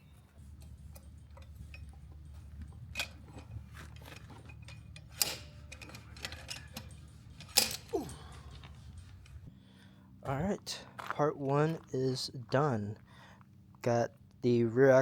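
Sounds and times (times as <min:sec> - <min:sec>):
steady low hum: 0:00.0 - 0:15.0
hand tools clinking on metal: 0:00.5 - 0:09.5.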